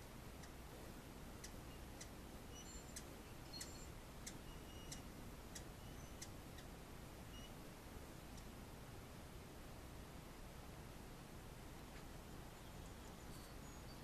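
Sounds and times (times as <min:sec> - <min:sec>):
small bird chip calls: 0:01.4 - 0:07.6, 0:12.5 - 0:14.0.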